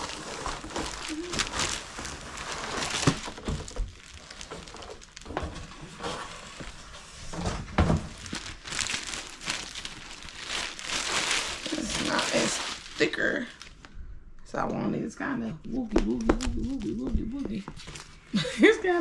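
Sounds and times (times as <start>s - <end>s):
plastic packaging crinkling: 0.0s - 13.9s.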